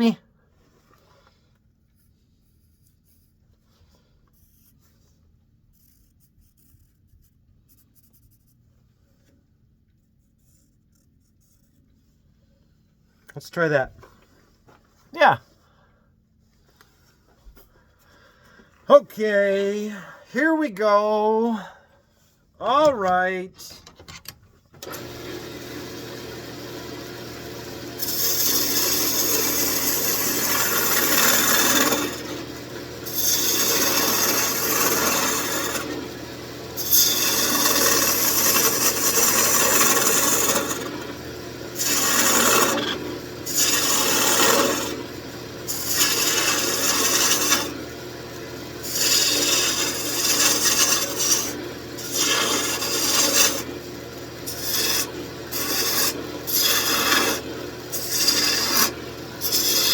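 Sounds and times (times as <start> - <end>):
gouge scraping spinning wood: 24.8 - 59.9
lathe motor humming: 24.8 - 59.9.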